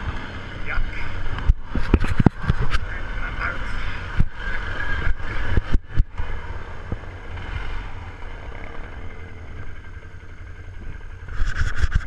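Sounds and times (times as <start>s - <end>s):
atv engine running: 0.0s - 12.0s.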